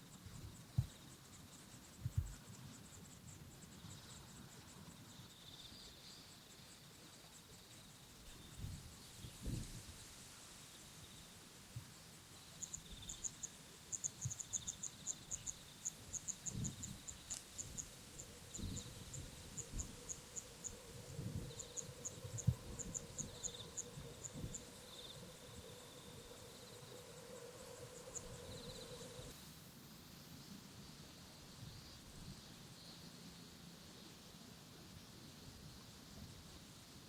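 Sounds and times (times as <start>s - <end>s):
faint steady hum: 0.0s - 37.0s
lower-pitched insect call: 0.0s - 37.0s
insect chirping high-pitched: 10.7s - 29.4s.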